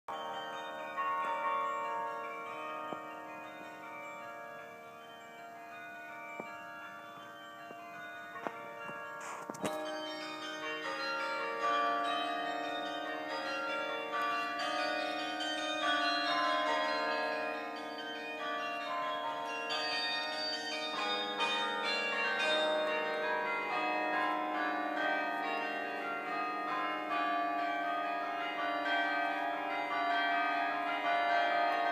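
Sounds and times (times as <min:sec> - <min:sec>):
carillon bells playing tune: 0:00.1 - 0:23.9.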